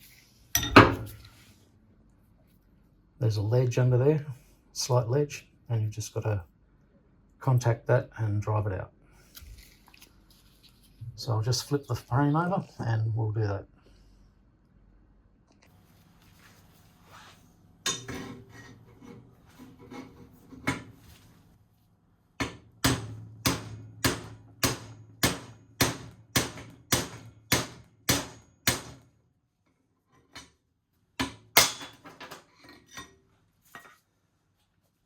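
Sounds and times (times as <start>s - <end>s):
hammer striking metal drift: 22.4s - 29.0s.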